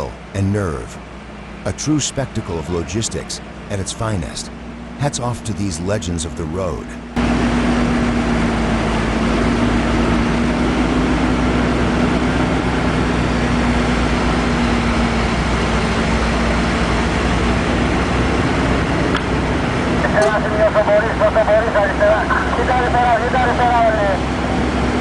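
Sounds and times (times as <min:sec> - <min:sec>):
truck diesel engine running: 0:00.0 - 0:25.0.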